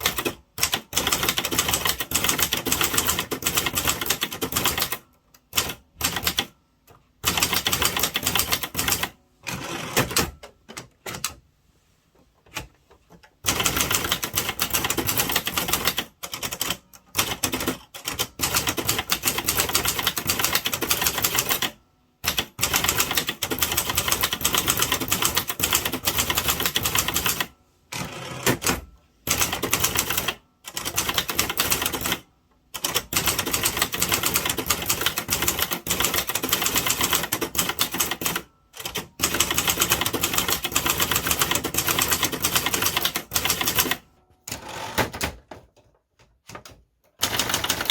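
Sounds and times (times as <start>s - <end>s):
rapid typewriter key strikes: 0.0s - 5.0s, 47.2s - 47.9s.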